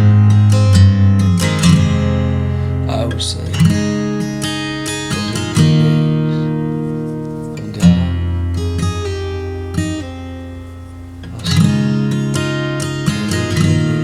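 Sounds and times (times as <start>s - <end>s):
acoustic guitar playing: 0.0s - 14.0s.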